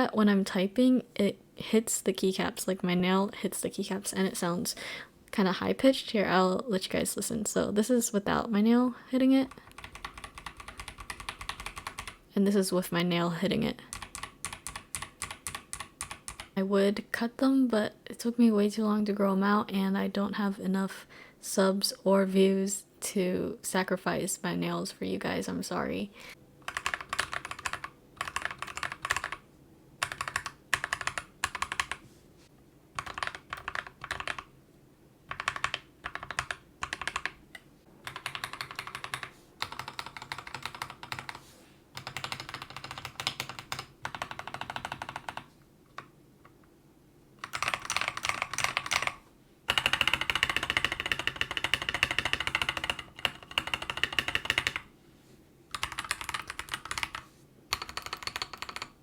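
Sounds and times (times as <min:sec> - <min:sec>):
mechanical keyboard typing: 0:09.4 - 0:12.2, 0:13.9 - 0:16.6, 0:26.6 - 0:29.4, 0:30.0 - 0:32.0, 0:32.9 - 0:34.5, 0:35.3 - 0:41.4, 0:42.0 - 0:46.1, 0:47.4 - 0:54.9, 0:55.7 - 0:59.0.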